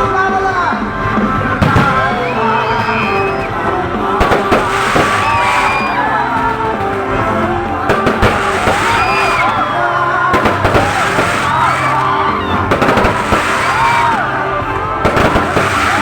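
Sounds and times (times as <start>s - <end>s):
fireworks bangs and crackles: 0.0s - 16.0s
loud music with bass notes: 0.0s - 16.0s.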